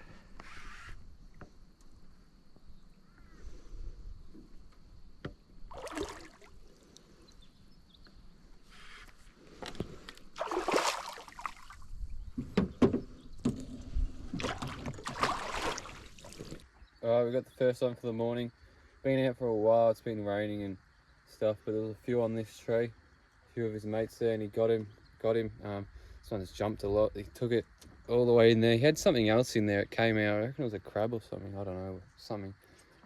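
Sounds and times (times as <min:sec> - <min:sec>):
water splashing and sloshing: 0:05.6 - 0:07.0, 0:09.4 - 0:16.7
sharp knocks on boat: 0:12.3 - 0:13.7.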